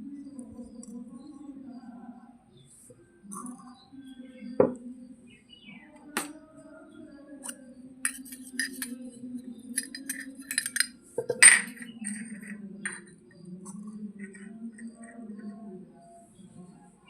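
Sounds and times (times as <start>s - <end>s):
toy kitchen pieces clinking: 8.1s - 9.0s, 9.7s - 13.1s.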